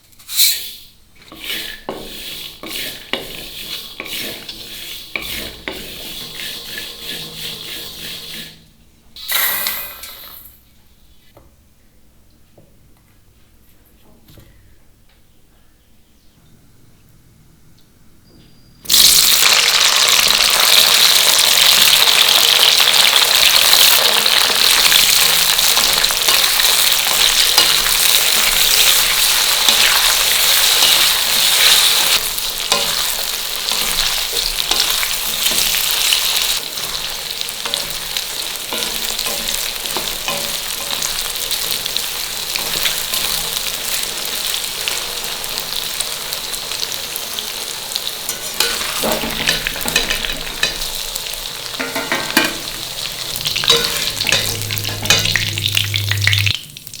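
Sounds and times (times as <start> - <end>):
food sizzling in hot oil: 1.3 - 8.6, 18.9 - 57.0.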